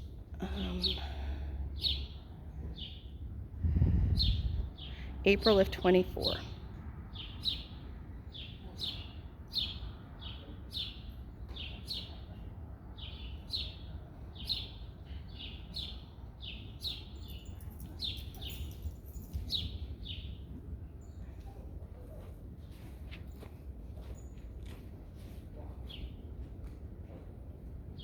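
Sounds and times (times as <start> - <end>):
low steady rumble: 3.2 - 7.0.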